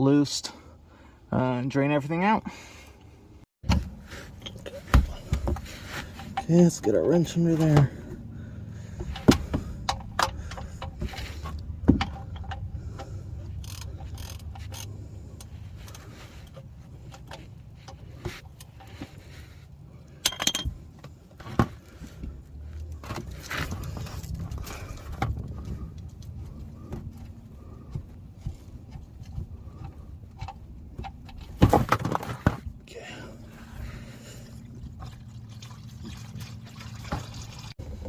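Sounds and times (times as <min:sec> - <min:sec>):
low steady rumble: 0:02.5 - 0:38.0
wrench clinking on metal: 0:20.2 - 0:20.8.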